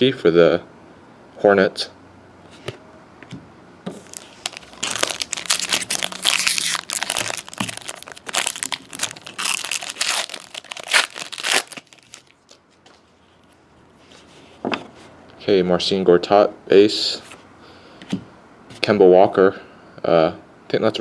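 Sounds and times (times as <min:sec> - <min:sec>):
plastic wrapper crinkling and tearing: 0:04.0 - 0:12.6.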